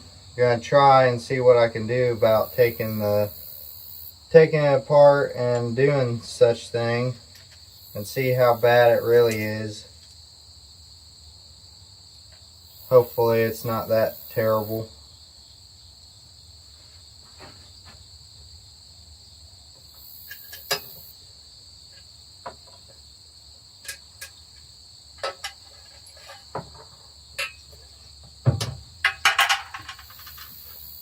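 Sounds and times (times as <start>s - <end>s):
crickets chirring: 0.0s - 31.0s
tools clinking on metal engine: 20.3s - 21.0s, 27.4s - 27.8s, 29.0s - 30.6s.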